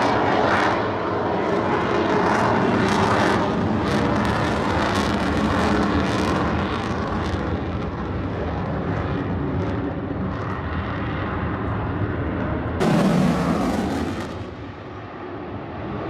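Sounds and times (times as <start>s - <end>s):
sudden loud blast: 12.8s - 14.9s
aircraft engine drone: 12.8s - 15.1s.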